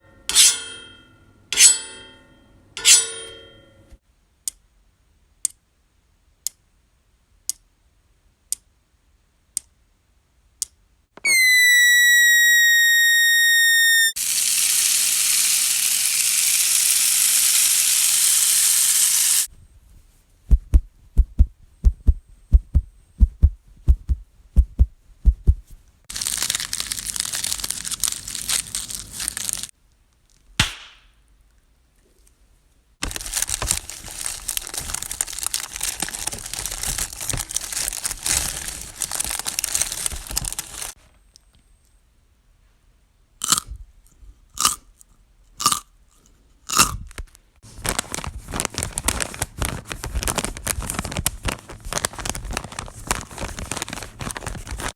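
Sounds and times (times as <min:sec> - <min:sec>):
steady high hiss: 0:13.7 - 0:19.5
low thumps: 0:20.4 - 0:25.8
crackling rustling noise: 0:25.6 - 0:30.6, 0:33.0 - 0:41.0, 0:47.0 - 0:54.9.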